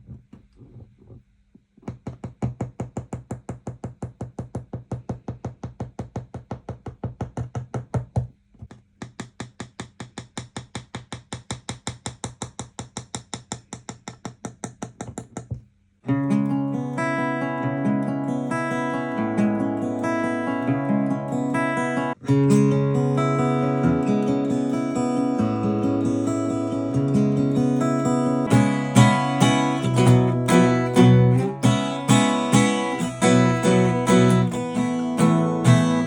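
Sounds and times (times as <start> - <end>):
acoustic guitar picking: 16.1 - 36.0
strummed guitar chord: 16.3 - 36.0.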